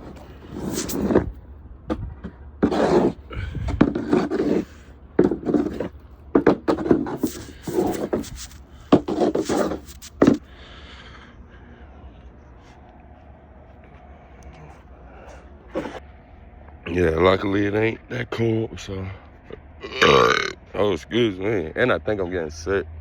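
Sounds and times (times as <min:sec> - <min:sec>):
snow shovel scraping pavement: 0:00.0 - 0:01.3, 0:02.6 - 0:03.2, 0:03.8 - 0:10.4.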